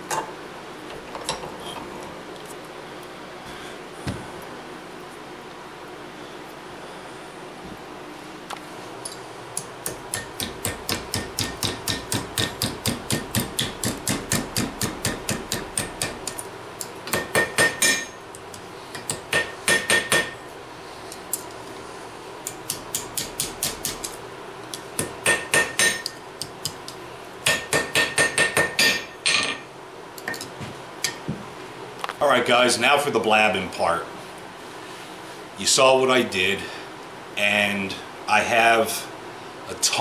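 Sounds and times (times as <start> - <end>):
hammer striking steel on anvil: 9.8 - 16.4, 17.1 - 18.2, 19.0 - 20.4, 25.0 - 26.8, 27.4 - 29.6.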